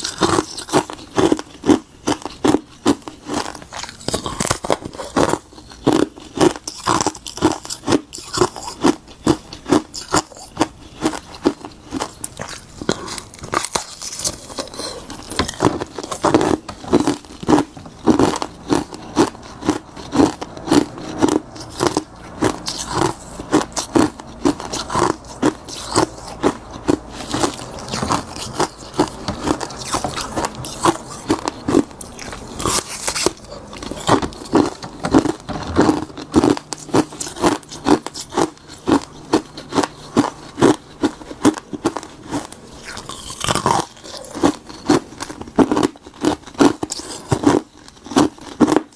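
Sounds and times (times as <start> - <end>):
crunching ice: 0.0 - 48.9.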